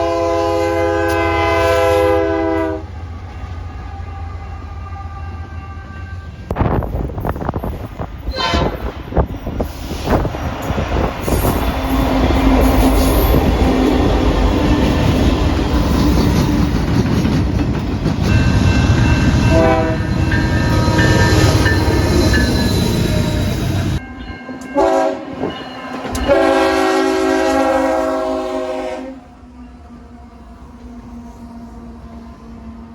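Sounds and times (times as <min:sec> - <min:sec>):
train horn: 0:00.0 - 0:06.8, 0:08.3 - 0:09.0, 0:18.8 - 0:32.0
passing train rumble and clatter: 0:00.0 - 0:32.9.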